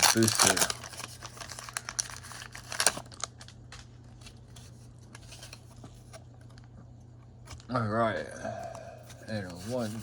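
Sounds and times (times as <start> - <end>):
foil wrapper crinkling and tearing: 0.0 - 4.4
steady low hum: 0.0 - 10.0.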